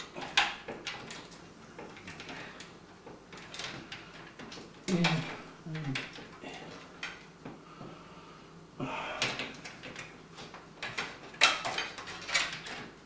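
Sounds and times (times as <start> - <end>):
clicks and knocks of computer parts: 9.2 - 13.0.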